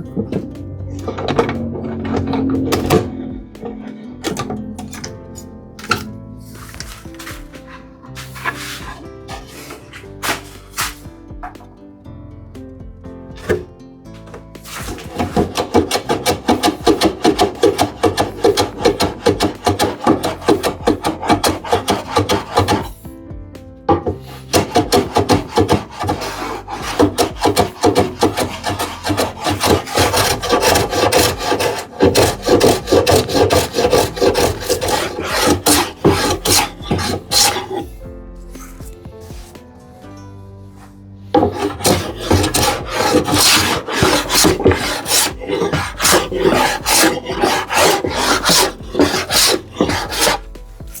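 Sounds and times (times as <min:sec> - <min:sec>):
hand tool working wood: 0:00.0 - 0:11.7, 0:13.3 - 0:23.1, 0:23.9 - 0:39.6, 0:40.7 - 0:51.0.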